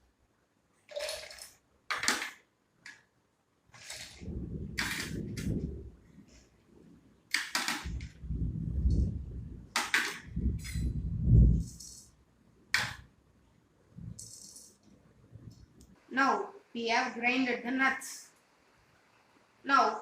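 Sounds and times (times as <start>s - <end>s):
kitchen items clicking and clinking: 0.9s - 2.4s.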